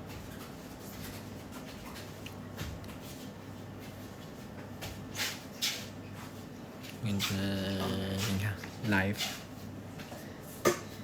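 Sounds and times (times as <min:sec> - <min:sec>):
steady low hum: 0:06.6 - 0:11.0.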